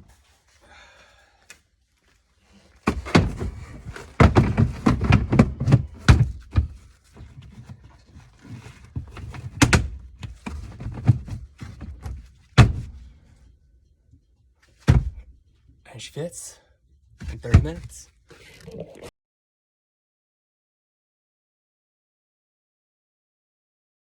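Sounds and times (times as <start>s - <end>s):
heavy thuds and knocks: 2.9s - 7.5s, 14.8s - 15.3s.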